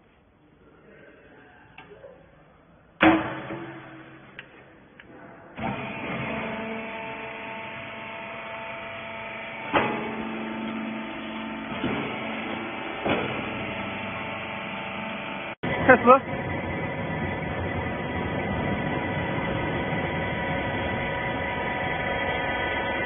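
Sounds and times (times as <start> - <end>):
loud metal clang: 3.0 - 4.4
metal clank: 3.0 - 4.5
baler motor humming: 5.6 - 23.0.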